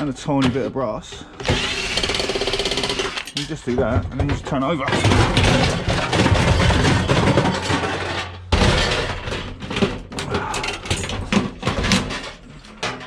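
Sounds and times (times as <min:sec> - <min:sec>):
sheet metal clattering and knocking: 0:03.0 - 0:13.0.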